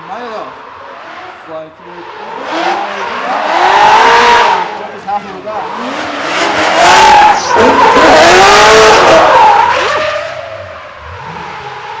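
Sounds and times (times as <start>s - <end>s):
car engine revving: 0.3s - 12.0s
tyres screeching: 2.0s - 11.9s.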